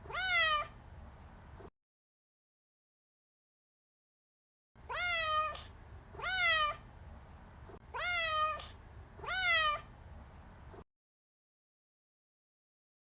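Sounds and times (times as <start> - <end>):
cat meowing: 0.0 - 0.8, 4.8 - 6.8, 7.9 - 9.9.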